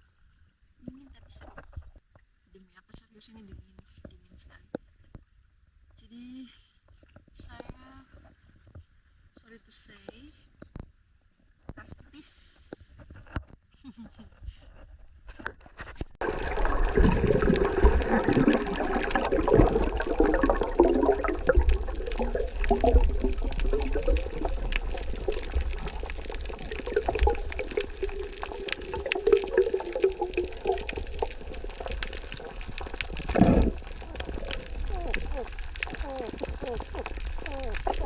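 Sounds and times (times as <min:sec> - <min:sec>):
underwater bubbling and gurgling: 0:16.2 - 0:38.0
water thumping against microphone: 0:16.2 - 0:38.0.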